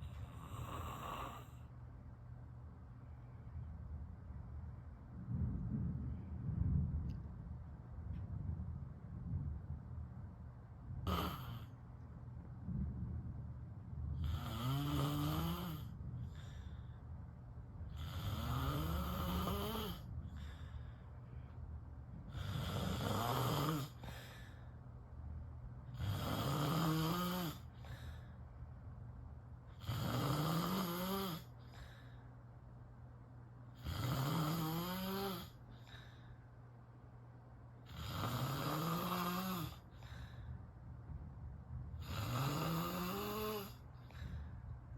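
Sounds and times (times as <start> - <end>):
person snoring: 0.0 - 1.6, 11.0 - 11.7, 14.2 - 15.9, 18.0 - 20.1, 22.3 - 24.3, 26.0 - 28.0, 29.8 - 31.5, 33.8 - 35.6, 37.9 - 40.0, 42.0 - 43.8.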